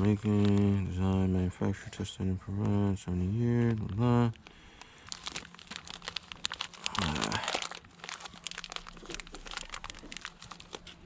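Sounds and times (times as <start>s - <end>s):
packaging crinkling: 0.0s - 0.8s, 3.5s - 11.0s.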